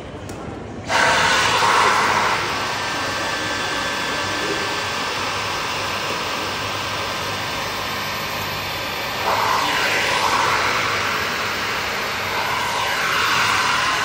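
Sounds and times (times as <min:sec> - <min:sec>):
vacuum cleaner running: 0:00.9 - 0:14.0.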